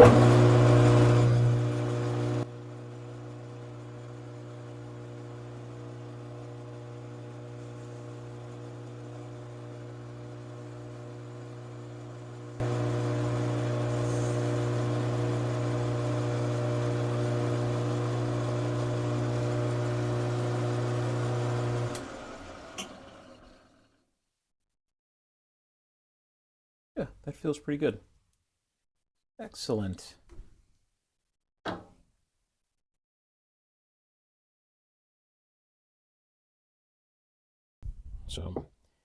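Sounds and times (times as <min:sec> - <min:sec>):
metal lathe motor hum: 0:00.0 - 0:23.9.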